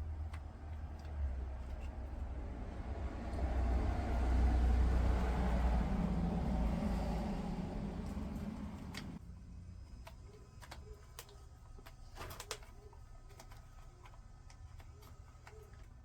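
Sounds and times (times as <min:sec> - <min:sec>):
low rumble: 0:02.5 - 0:09.2
small parts clicking and tapping: 0:09.8 - 0:16.0.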